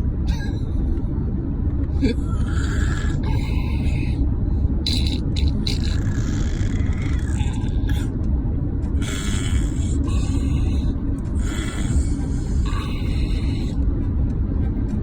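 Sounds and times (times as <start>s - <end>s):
steady low rumble: 0.0s - 15.0s
baby making fake coughs: 2.0s - 3.5s, 9.0s - 10.6s, 11.4s - 13.3s.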